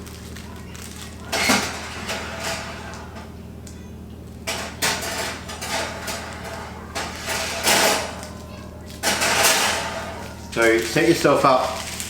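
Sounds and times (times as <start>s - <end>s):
steady low hum: 0.0s - 10.9s.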